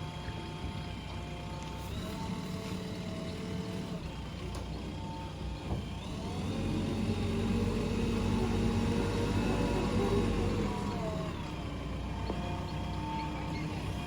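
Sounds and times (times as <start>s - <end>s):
diesel engine revving: 6.0s - 14.0s.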